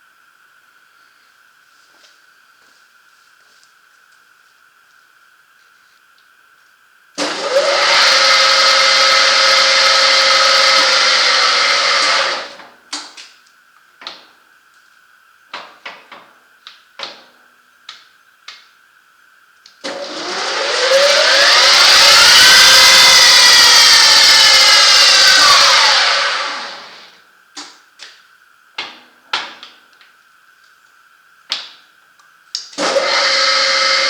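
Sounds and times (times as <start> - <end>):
lathe motor whining: 7.2 - 12.6, 19.8 - 27.1, 32.8 - 34.0.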